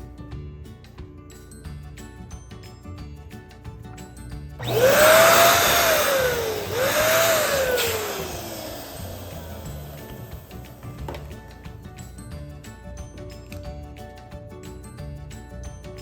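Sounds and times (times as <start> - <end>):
background music: 0.0 - 16.0
electric balloon pump rushing air: 4.6 - 11.4.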